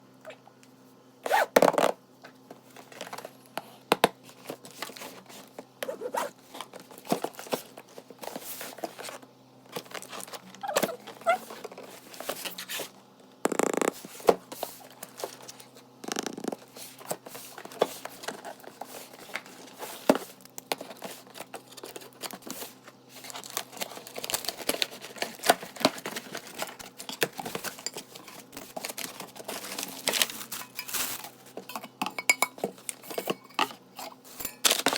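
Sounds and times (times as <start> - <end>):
packaging rustling and crinkling: 4.2 - 13.0, 14.0 - 31.8, 34.0 - 34.9.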